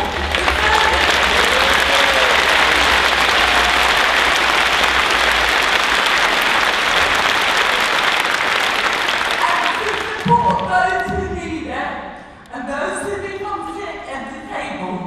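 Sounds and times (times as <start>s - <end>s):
large audience applauding: 0.0s - 10.7s
people cheering: 0.0s - 10.7s.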